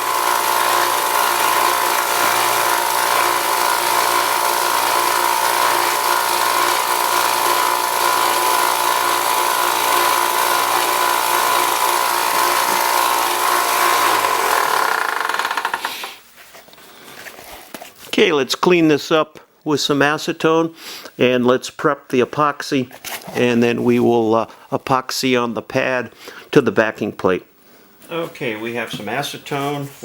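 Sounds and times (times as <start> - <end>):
power sander running: 0.0 - 16.2.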